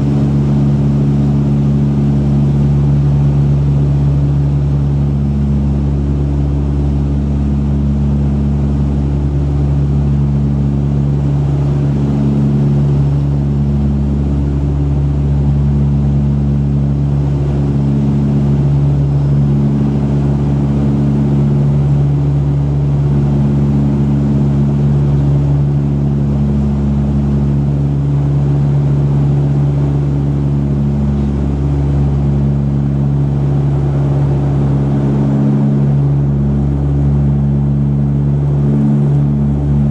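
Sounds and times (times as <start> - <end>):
propeller hum in aircraft cabin: 0.0 - 39.9.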